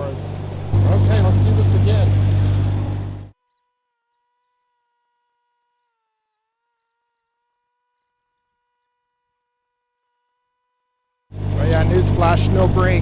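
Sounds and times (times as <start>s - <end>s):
trencher engine running: 0.0s - 3.3s, 11.3s - 13.0s.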